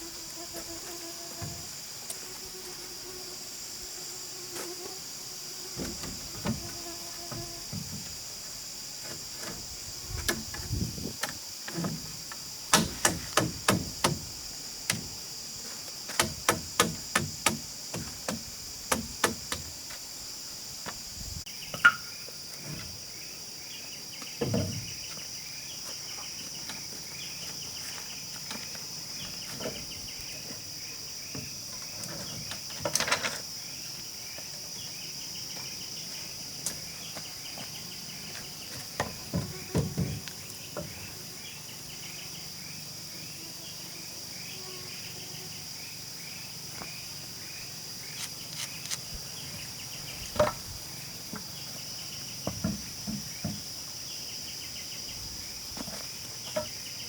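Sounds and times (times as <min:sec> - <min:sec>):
high insect drone: 0:00.0 - 0:57.0
tool striking wood: 0:12.7 - 0:14.3, 0:16.1 - 0:19.7.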